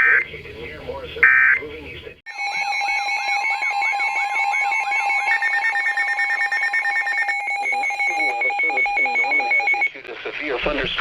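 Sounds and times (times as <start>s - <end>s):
warbling siren-like tone: 2.3s - 9.8s
electronic emergency alert tones: 2.3s - 10.0s.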